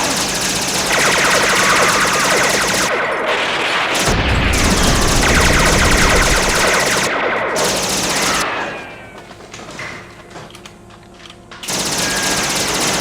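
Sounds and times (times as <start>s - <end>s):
machine-gun fire: 0.0s - 8.5s, 11.7s - 13.0s
deep boom: 4.1s - 7.1s.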